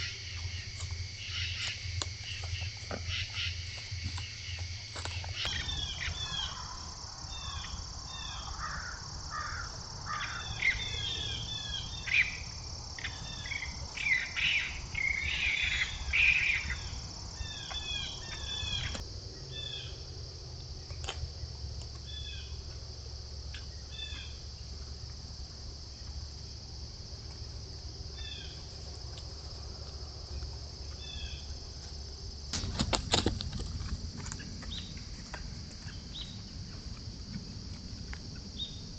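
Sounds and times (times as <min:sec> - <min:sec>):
high insect drone: 0:00.0 - 0:38.9
small birds chirping: 0:04.2 - 0:09.0, 0:10.1 - 0:19.0.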